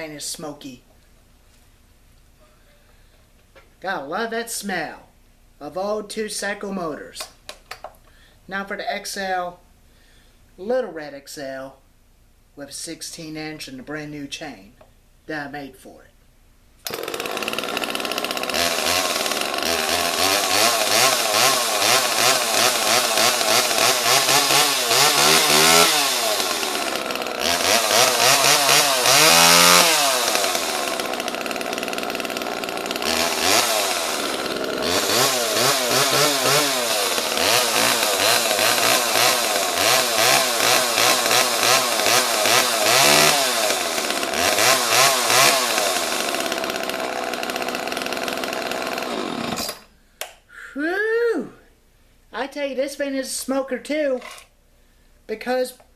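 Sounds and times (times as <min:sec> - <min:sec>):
chainsaw revving: 0:16.8 - 0:49.9.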